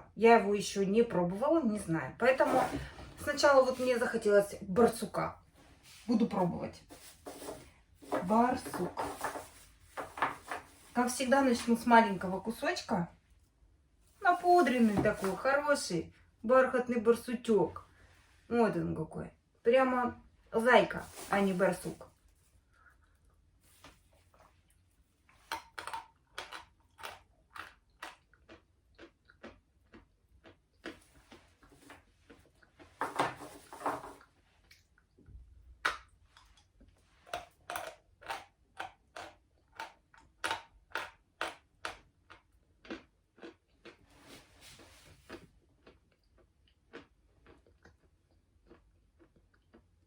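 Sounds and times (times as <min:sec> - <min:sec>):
chalk crunching while chewed: 0:24.2 - 0:33.0, 0:35.8 - 0:50.0.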